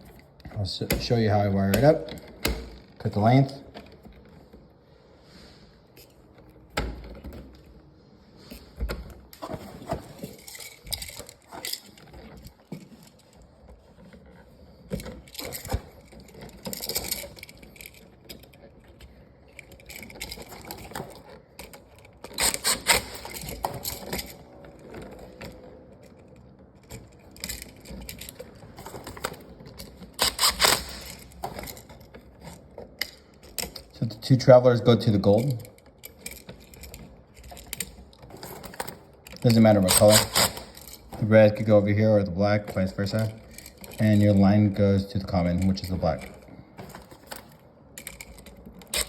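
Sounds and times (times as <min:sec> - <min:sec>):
hand tools clicking and snipping wire: 0:00.0 - 0:04.3, 0:08.5 - 0:49.0.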